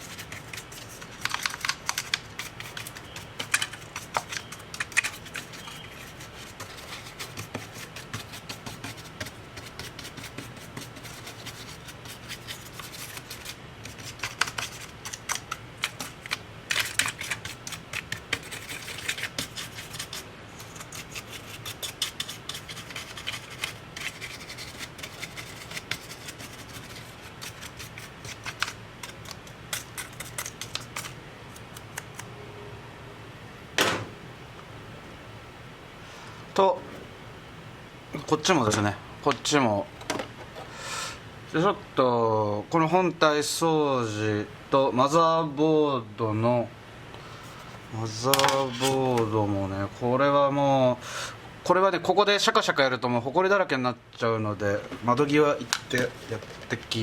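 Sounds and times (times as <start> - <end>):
hand tools scratching and clicking: 0.0 - 31.2, 48.4 - 49.2.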